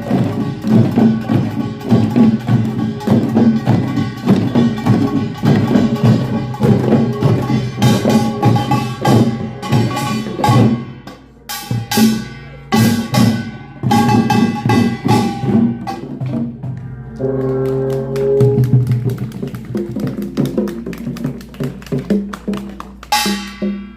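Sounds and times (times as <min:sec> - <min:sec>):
small gongs clanging: 0:00.0 - 0:18.8
drums: 0:00.0 - 0:23.9.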